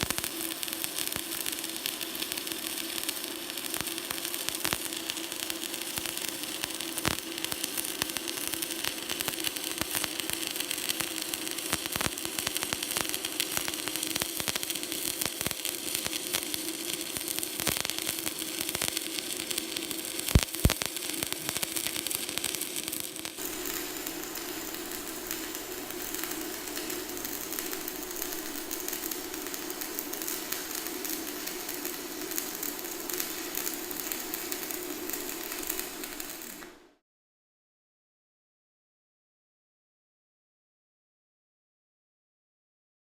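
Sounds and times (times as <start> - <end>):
welding arc crackling: 0.0 - 37.0
sharp cracks: 17.4 - 36.8
steady hum: 23.4 - 36.9.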